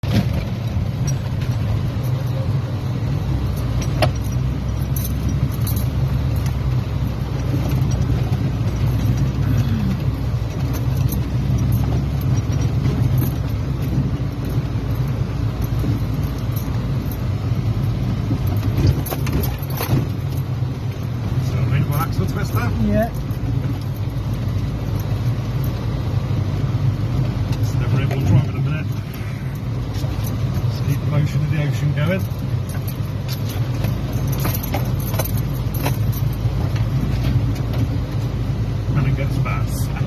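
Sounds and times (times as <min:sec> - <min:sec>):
vehicle engine droning: 0:00.0 - 0:40.0
light clicks and rattles: 0:00.1 - 0:26.0, 0:27.2 - 0:38.4.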